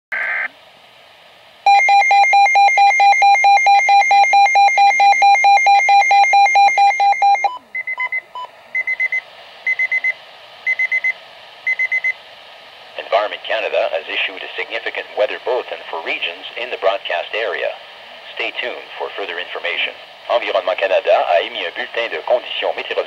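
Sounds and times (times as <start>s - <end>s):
rapidly pulsing electronic alarm beep: 1.7s - 12.2s.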